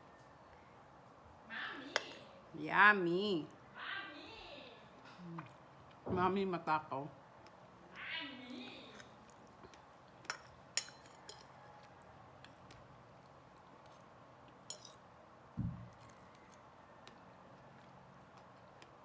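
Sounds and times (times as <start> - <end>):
fork clinking against plate: 2.0 - 2.2, 10.2 - 11.6, 14.7 - 15.0
soft low thud: 15.6 - 15.9.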